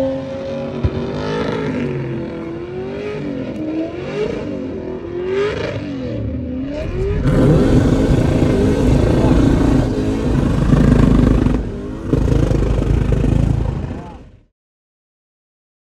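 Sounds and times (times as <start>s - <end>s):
car engine revving: 2.4s - 14.4s.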